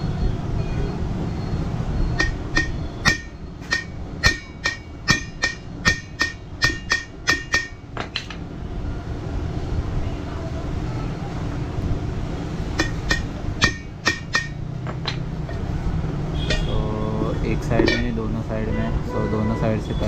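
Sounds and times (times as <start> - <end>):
hammer striking metal wheel rim: 2.1 - 8.4, 12.7 - 15.7, 16.4 - 18.3.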